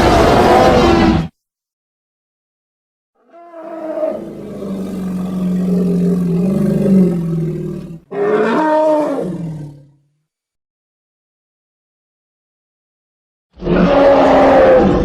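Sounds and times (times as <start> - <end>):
long low roar: 3.2 - 10.0, 13.6 - 15.0.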